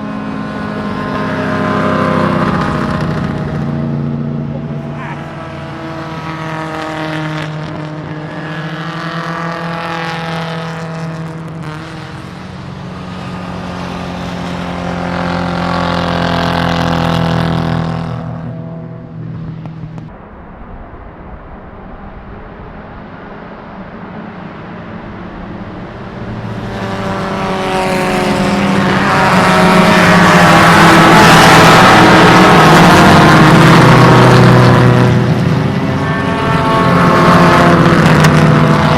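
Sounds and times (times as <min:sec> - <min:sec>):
racing car engines: 0:00.0 - 0:38.9.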